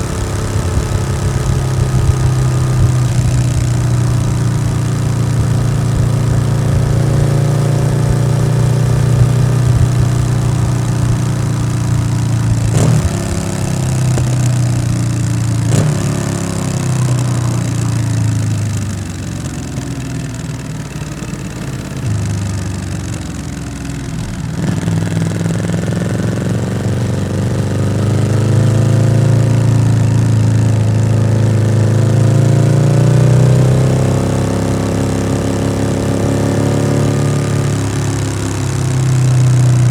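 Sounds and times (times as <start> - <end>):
motorcycle engine riding: 0.0 - 39.9.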